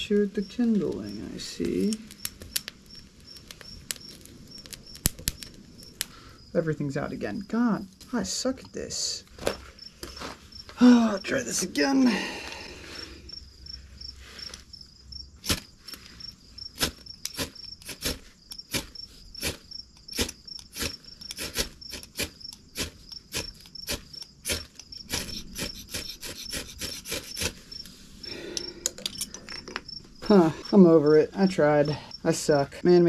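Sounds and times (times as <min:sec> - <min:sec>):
crickets chirping: 0:00.0 - 0:33.0
flint and steel striking: 0:01.6 - 0:06.2, 0:15.4 - 0:27.6.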